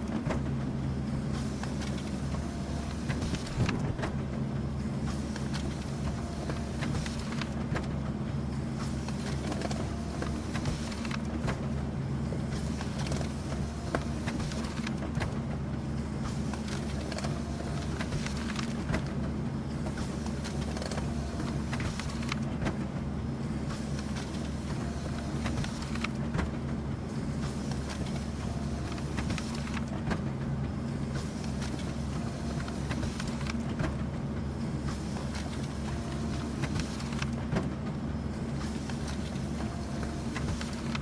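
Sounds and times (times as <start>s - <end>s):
printer humming: 0.0s - 41.0s
printer clicks and ticks: 31.3s - 34.0s.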